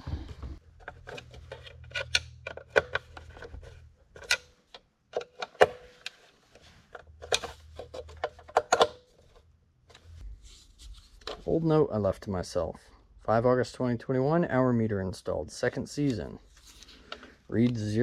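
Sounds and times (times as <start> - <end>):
plastic parts and tools clicking: 0.4 - 10.1.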